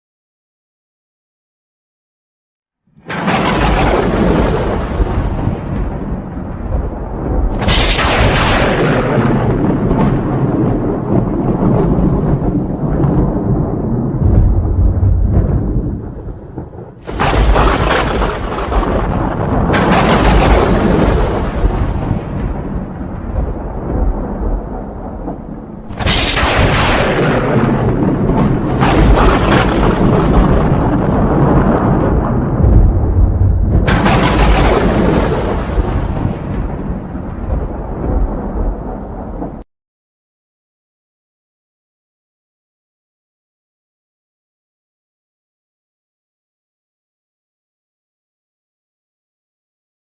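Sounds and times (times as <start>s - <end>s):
thunder claps rumbling: 3.0s - 39.7s.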